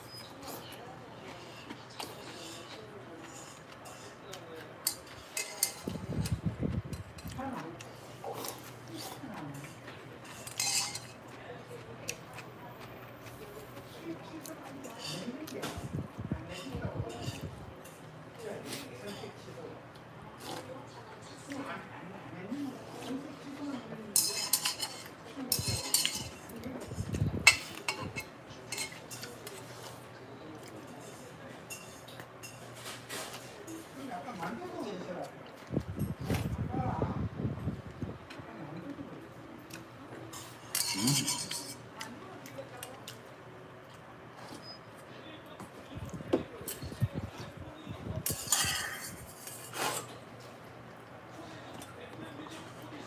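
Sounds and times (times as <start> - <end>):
utensils clinking against dish: 0.1 - 7.4, 8.5 - 11.4, 14.8 - 15.8, 16.5 - 19.4, 24.1 - 30.0, 30.6 - 33.9, 40.3 - 41.9, 48.2 - 50.2.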